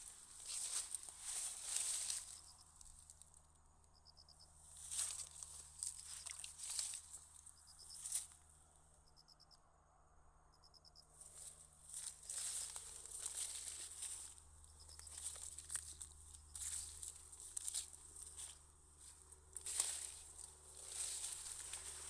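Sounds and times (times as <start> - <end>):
soft crackling and rustling: 0.0 - 3.4, 4.7 - 8.5, 11.2 - 22.0
insect chirping: 3.9 - 8.3, 9.0 - 9.7, 10.4 - 22.0.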